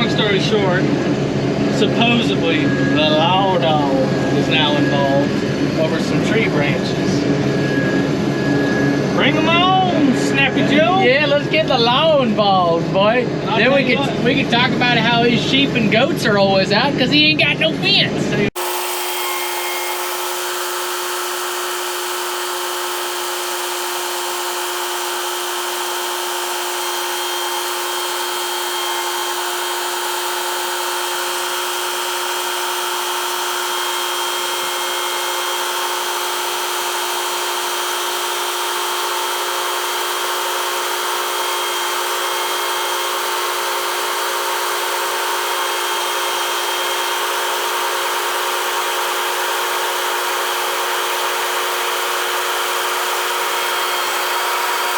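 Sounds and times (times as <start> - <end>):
combine harvester running: 18.6 - 54.9.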